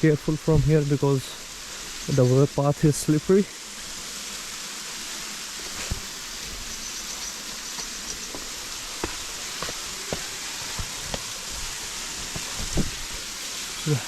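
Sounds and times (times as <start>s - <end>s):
waterfall rushing: 0.0s - 14.0s
footsteps on a slippery path: 5.6s - 13.4s.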